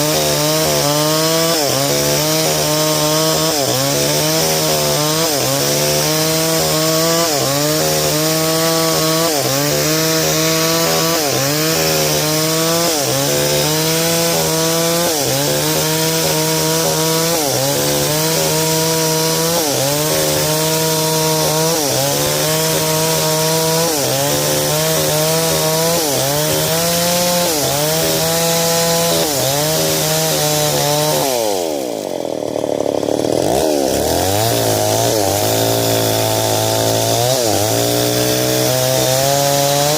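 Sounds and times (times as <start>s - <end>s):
chainsaw cutting a log: 0.0s - 39.9s.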